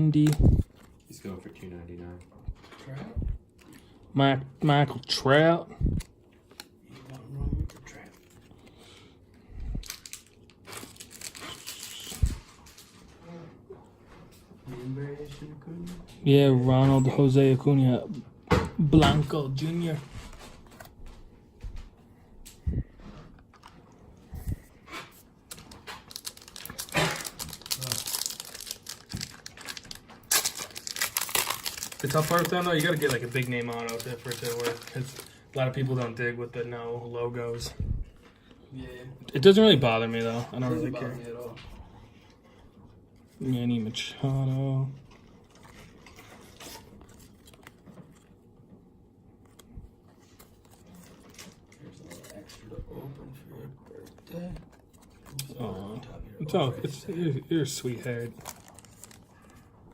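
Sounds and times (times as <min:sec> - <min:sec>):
card pack wrapper crinkling: 0:00.0 - 0:01.0, 0:09.8 - 0:13.0, 0:25.4 - 0:36.0, 0:45.4 - 0:48.4, 0:56.9 - 0:59.7.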